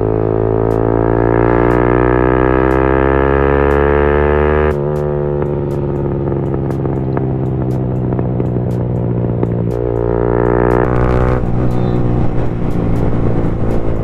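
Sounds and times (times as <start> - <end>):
motorcycle engine revving: 0.0 - 14.0
exhaust crackles and pops: 10.8 - 14.0.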